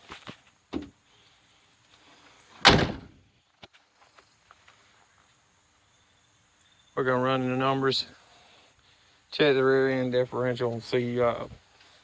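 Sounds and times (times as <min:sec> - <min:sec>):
truck door slamming: 0:02.6 - 0:03.2.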